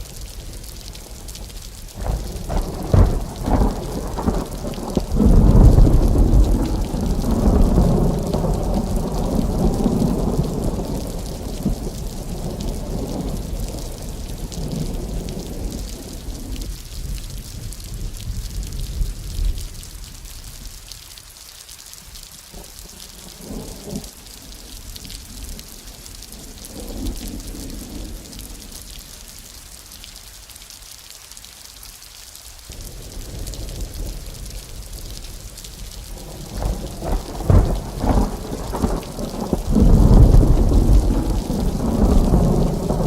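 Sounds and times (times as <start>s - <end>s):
rain hiss: 0.0s - 43.0s
thunder rumbling and cracking: 0.5s - 20.0s, 32.8s - 43.0s.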